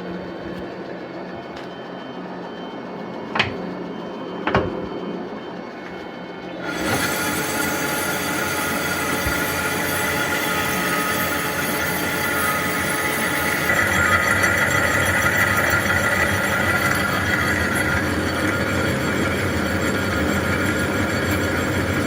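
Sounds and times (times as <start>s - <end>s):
metal lathe running: 0.0s - 22.0s
cutting tool squealing: 6.6s - 22.0s.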